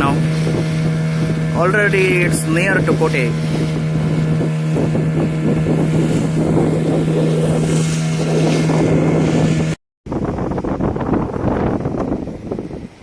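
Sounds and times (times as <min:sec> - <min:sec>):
motorboat engine running: 0:00.0 - 0:13.0
water rushing past hull: 0:00.0 - 0:13.0
wind buffeting microphone: 0:00.0 - 0:13.0.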